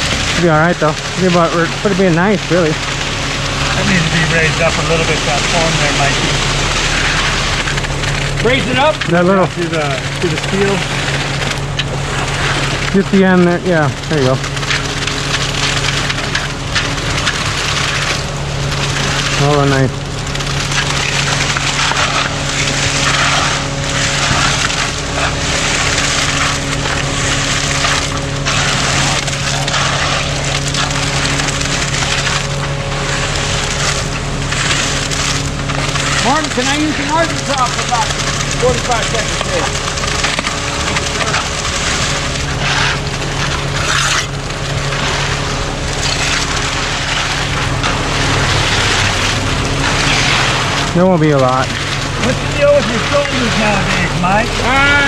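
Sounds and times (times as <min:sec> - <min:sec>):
engine running steadily: 0:00.0 - 0:55.0
gritty scraping and crunching: 0:00.0 - 0:55.0.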